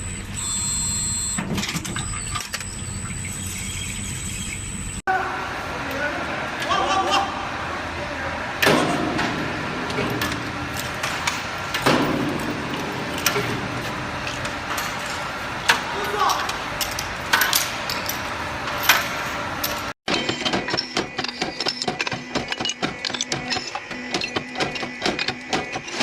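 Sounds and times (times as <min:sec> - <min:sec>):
knocks and clatter: 0:08.6 - 0:26.0.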